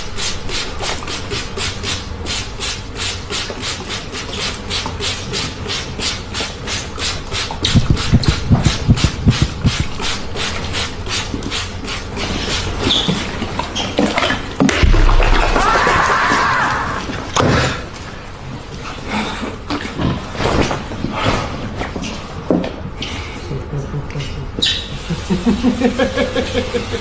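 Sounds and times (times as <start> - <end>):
low thuds: 14.8 - 16.9.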